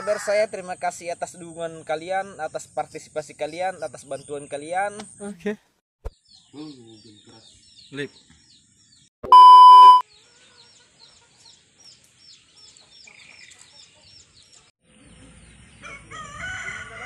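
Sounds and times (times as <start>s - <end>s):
rooster crowing: 0.0s - 0.4s, 15.8s - 17.0s
small bird chirping: 6.0s - 15.9s
loud steady beep: 9.2s - 10.0s.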